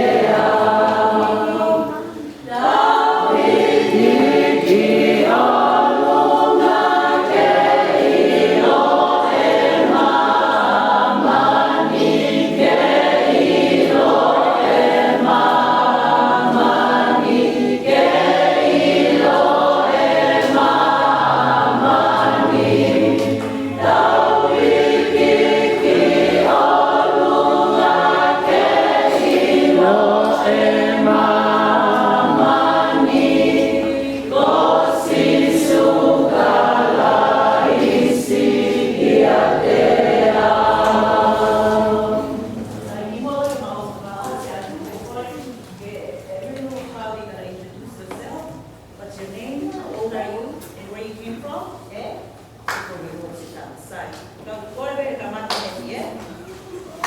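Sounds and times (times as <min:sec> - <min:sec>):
vocal group singing gospel: 0:00.0 - 0:45.0.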